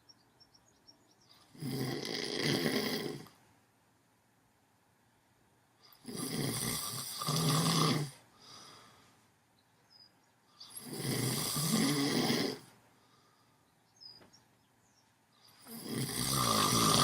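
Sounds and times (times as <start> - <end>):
person snoring: 1.5 - 3.3, 6.0 - 8.7, 10.6 - 12.7, 15.6 - 17.0
soft breath: 8.3 - 9.3, 12.7 - 14.0.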